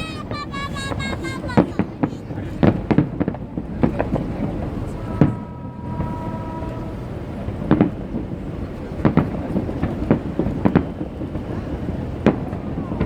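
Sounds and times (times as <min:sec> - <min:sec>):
fireworks bangs: 0:00.0 - 0:06.3.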